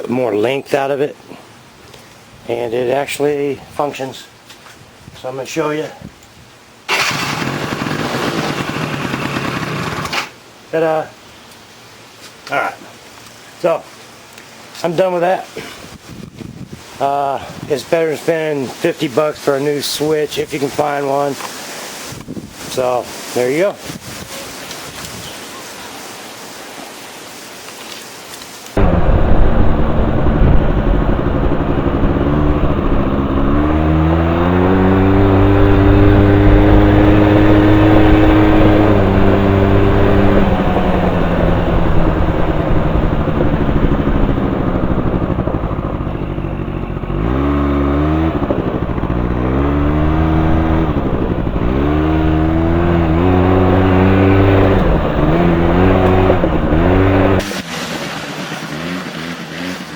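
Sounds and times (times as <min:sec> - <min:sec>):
atv engine revving: 0:06.9 - 0:10.2, 0:28.8 - 0:59.9
steady hiss: 0:10.6 - 0:33.4.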